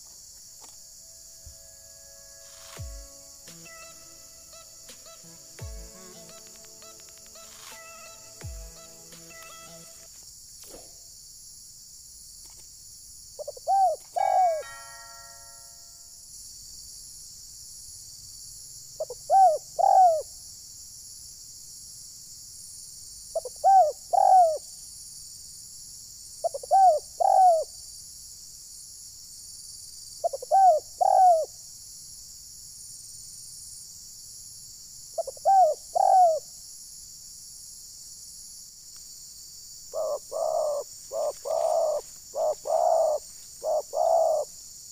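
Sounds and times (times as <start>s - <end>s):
steady high hiss: 0.0s - 12.1s
dove cooing: 13.4s - 14.6s, 19.0s - 20.3s, 23.4s - 24.6s, 26.4s - 27.7s, 30.3s - 31.5s, 35.2s - 36.4s, 39.9s - 44.5s.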